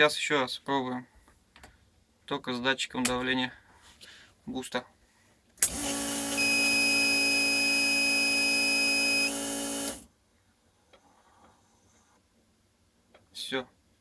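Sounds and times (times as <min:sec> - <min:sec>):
loud electric buzz: 0:05.7 - 0:10.0.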